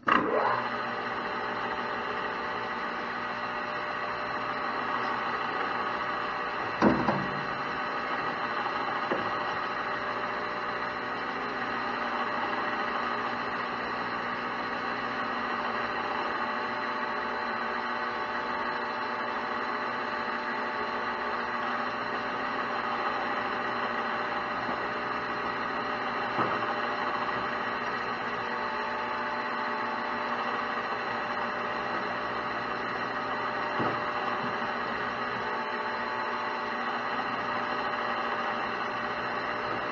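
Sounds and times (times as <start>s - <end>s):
metal lathe humming: 0.0s - 39.9s.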